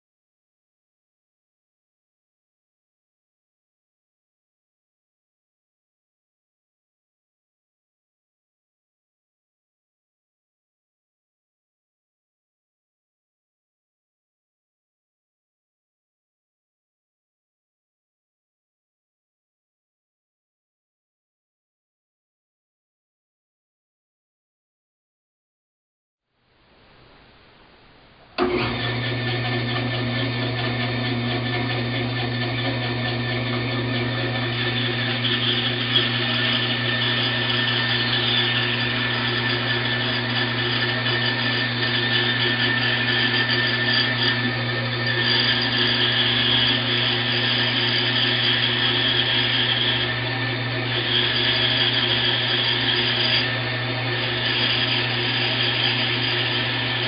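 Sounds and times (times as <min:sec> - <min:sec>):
wood lathe motor hum: 0:28.4 - 0:57.0.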